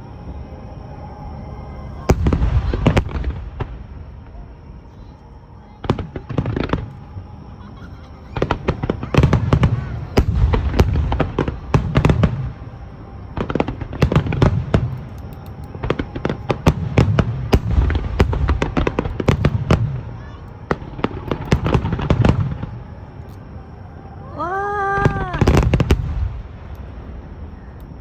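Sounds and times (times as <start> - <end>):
deep firework booms: 2.0 - 4.4, 5.8 - 7.1, 8.3 - 15.1, 15.8 - 22.9, 25.0 - 27.6.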